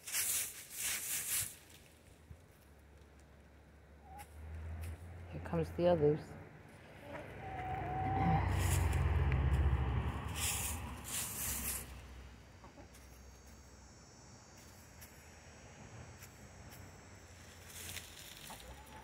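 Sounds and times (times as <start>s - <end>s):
rustling in dry leaves: 0.0s - 3.6s, 6.7s - 13.6s, 16.2s - 19.0s
low rumble: 6.2s - 12.6s
chickens clucking: 6.8s - 9.0s, 12.6s - 13.2s, 18.3s - 19.0s
hen call: 7.0s - 8.8s.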